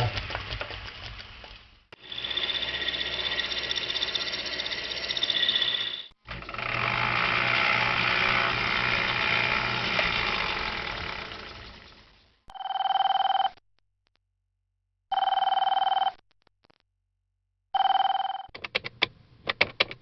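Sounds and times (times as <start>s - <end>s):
machine high whine: 2.0s - 12.1s
milling machine running: 2.0s - 12.1s.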